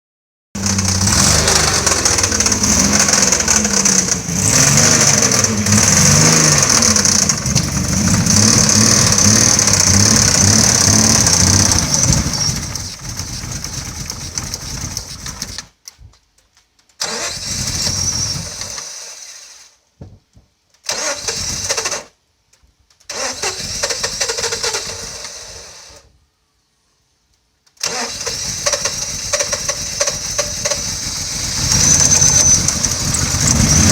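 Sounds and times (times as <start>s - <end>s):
car engine revving with knock: 0.6s - 15.7s, 28.3s - 33.9s.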